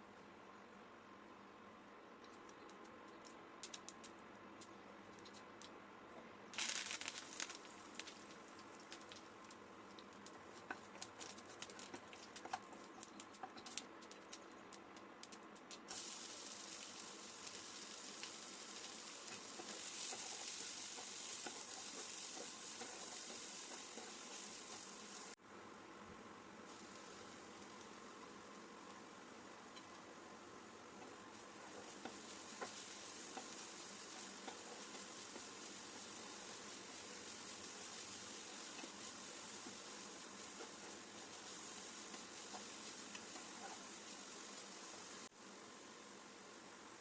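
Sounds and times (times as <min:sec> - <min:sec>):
food sizzling in hot oil: 0:06.5 - 0:09.3, 0:15.7 - 0:25.4, 0:26.7 - 0:46.4.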